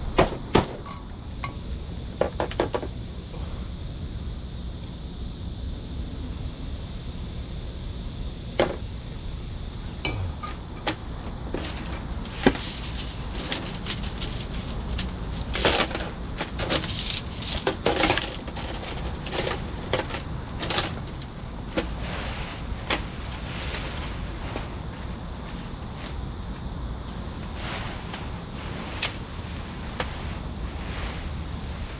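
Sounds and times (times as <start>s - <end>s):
steady low rumble: 9.2s - 17.7s.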